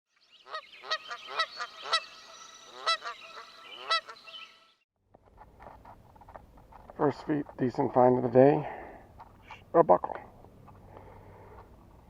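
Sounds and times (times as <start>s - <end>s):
geese honking: 0.4s - 4.8s.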